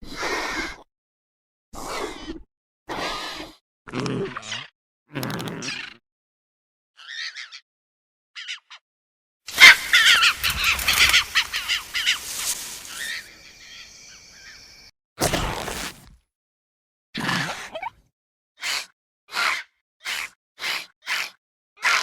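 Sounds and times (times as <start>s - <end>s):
creature call of falling squeaks: 15.2s - 16.2s.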